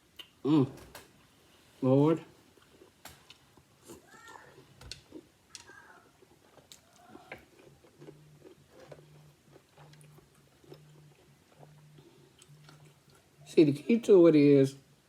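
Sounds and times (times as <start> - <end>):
wet mouth smacks and clicks: 0.1 - 0.4
close chewing: 2.5 - 13.5.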